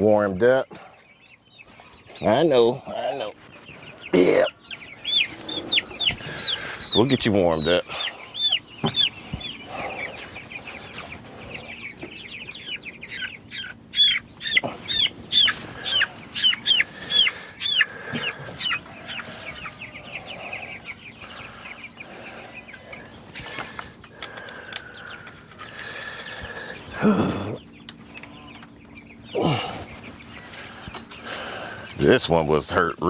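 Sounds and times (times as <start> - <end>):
chicks peeping: 0.0 - 33.0.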